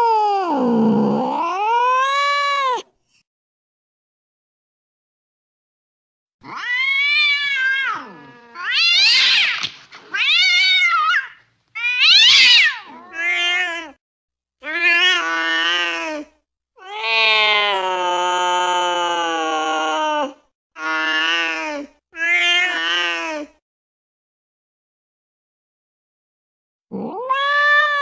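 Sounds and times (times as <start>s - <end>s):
cat yowling angrily: 0.0s - 2.8s, 6.4s - 14.0s, 14.6s - 23.3s, 27.0s - 28.0s.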